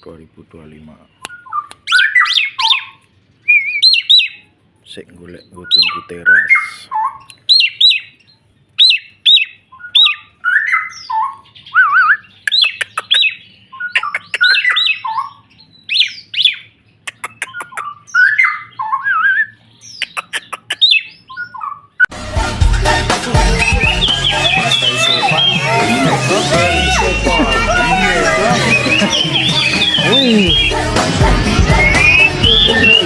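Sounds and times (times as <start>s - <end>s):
music: 22.1s - 33.0s
songbird singing: 22.2s - 30.8s, 31.6s - 33.0s.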